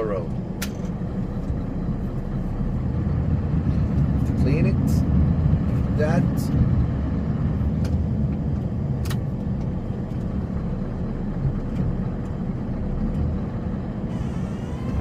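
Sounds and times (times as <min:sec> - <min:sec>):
snowplow engine rumbling: 0:00.0 - 0:15.0.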